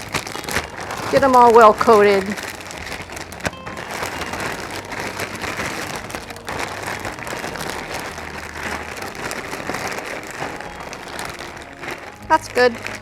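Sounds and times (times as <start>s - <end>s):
vegetables shaken in plastic bag: 0.0s - 13.0s.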